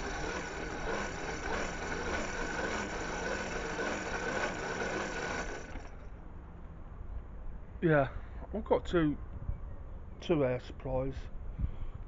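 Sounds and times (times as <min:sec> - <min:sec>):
forge air blower whining: 0:00.0 - 0:06.1.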